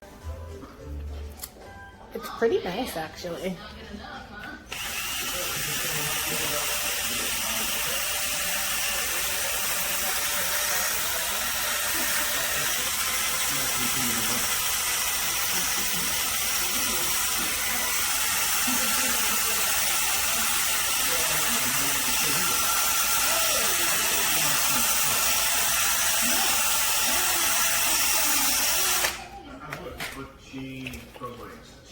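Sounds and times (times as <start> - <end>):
power scrubber on wet surface: 4.7 - 29.1.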